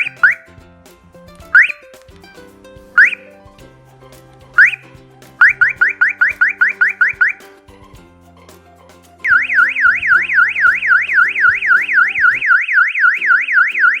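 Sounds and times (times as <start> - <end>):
soft background music: 0.0 - 14.0
electronic alarm siren warbling: 9.3 - 14.0.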